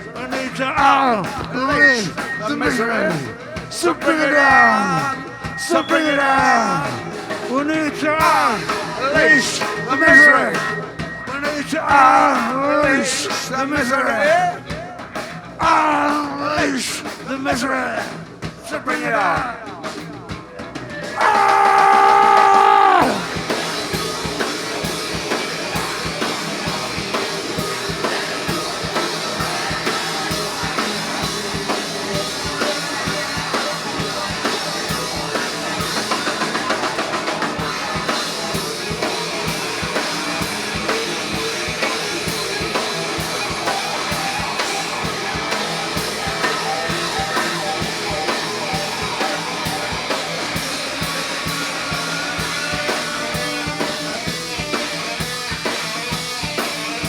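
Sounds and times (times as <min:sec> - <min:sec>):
electric guitar: 0:00.0 - 0:18.7, 0:19.3 - 0:57.0
drum kit beat: 0:00.0 - 0:57.0.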